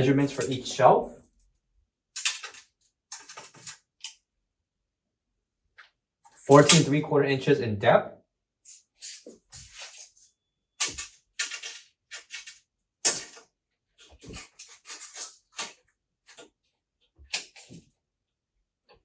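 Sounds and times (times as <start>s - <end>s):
tape measure clicking and scraping: 6.5s - 7.0s.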